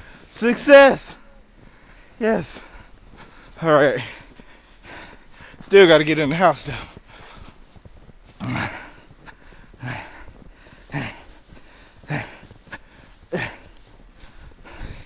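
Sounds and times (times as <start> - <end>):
person breathing hard: 1.6 - 5.6, 6.8 - 15.0.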